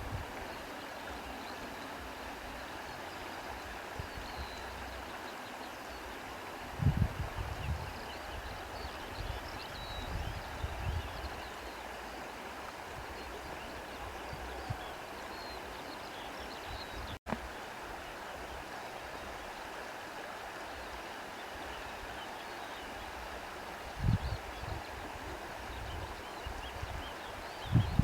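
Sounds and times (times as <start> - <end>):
wind buffeting microphone: 6.7 - 11.4, 23.9 - 28.0.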